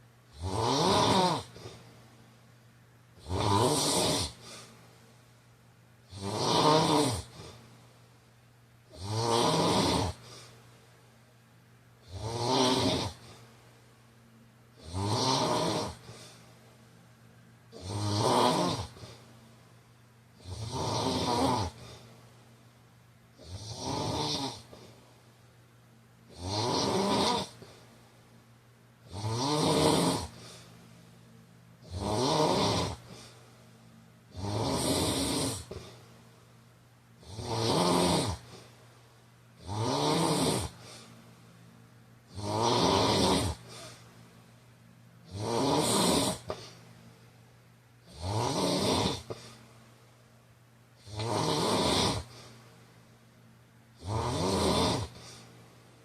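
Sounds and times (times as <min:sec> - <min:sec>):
man snoring: 0:00.3 - 0:01.8, 0:03.2 - 0:04.6, 0:06.1 - 0:07.6, 0:08.9 - 0:10.4, 0:12.0 - 0:13.4, 0:14.8 - 0:16.2, 0:17.7 - 0:19.2, 0:20.4 - 0:22.0, 0:23.4 - 0:24.9, 0:26.3 - 0:27.7, 0:29.1 - 0:30.6, 0:31.8 - 0:33.2, 0:34.3 - 0:36.0, 0:37.2 - 0:38.6, 0:39.6 - 0:40.9, 0:42.3 - 0:43.9, 0:45.2 - 0:46.6, 0:48.0 - 0:49.6, 0:51.0 - 0:52.4, 0:54.0 - 0:55.4.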